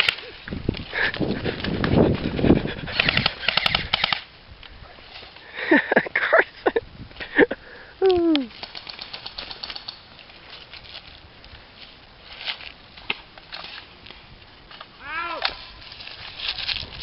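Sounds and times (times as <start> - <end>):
airsoft guns firing bursts: 2.9 - 4.3, 8.5 - 10.0.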